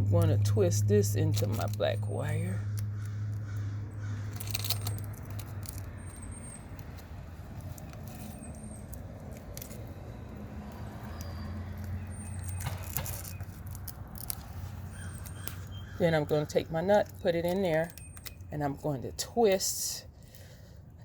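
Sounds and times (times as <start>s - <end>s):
low steady hum: 0.0s - 21.0s
wires clinking and rustling: 4.3s - 18.9s.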